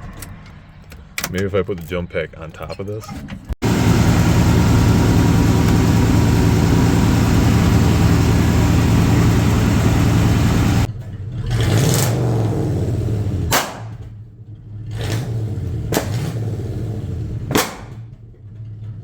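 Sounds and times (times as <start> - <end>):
engine running loudly: 3.6 - 10.9, 11.5 - 13.6, 15.1 - 17.6.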